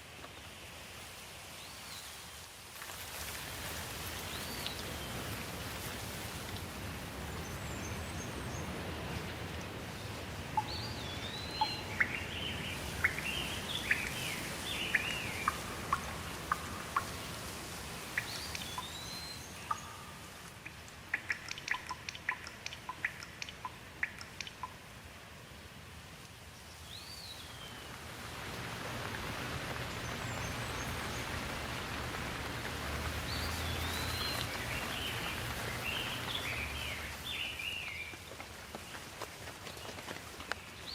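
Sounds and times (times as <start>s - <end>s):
rain hiss: 0.0s - 40.9s
birds whistling and chirping: 10.6s - 15.9s, 18.2s - 20.2s, 33.3s - 38.1s.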